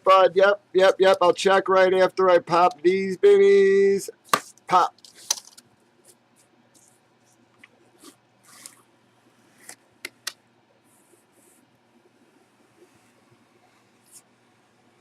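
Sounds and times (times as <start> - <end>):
packaging rustling: 4.3 - 5.6.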